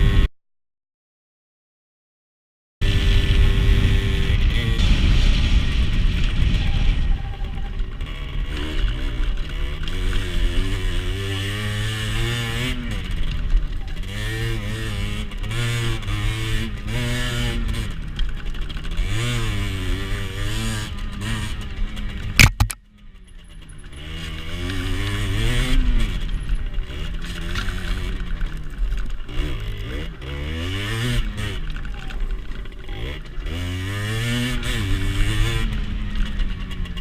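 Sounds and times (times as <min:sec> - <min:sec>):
motorcycle engine revving: 0:00.0 - 0:00.3, 0:02.8 - 0:37.0
sharp click: 0:22.4 - 0:22.8.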